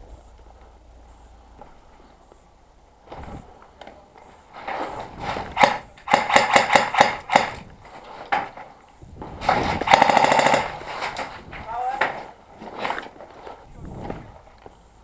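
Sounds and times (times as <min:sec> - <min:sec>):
scattered knocks: 0:05.2 - 0:07.6, 0:09.5 - 0:11.4
rapid airsoft gunfire: 0:05.2 - 0:07.7, 0:09.4 - 0:11.4.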